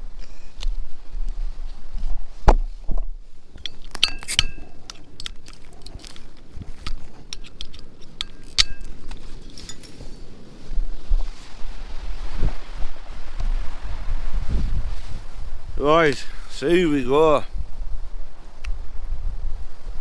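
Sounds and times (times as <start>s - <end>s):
low wind rumble on microphone: 0.0s - 20.0s
glass bottle clinking: 3.7s - 4.7s.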